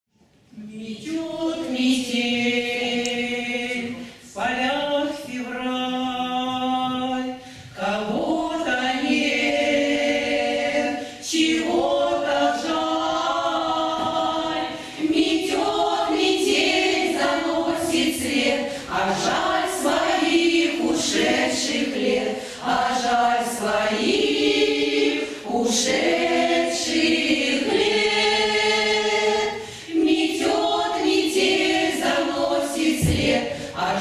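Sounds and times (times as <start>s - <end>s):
choir singing slow song: 0.4s - 34.0s.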